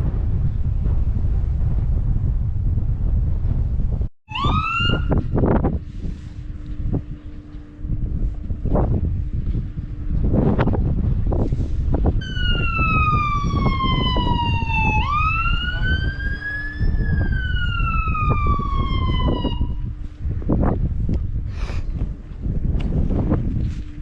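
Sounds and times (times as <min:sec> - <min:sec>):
wind rumble on microphone: 0:00.0 - 0:24.0
police siren wailing: 0:04.3 - 0:05.7, 0:12.2 - 0:20.0.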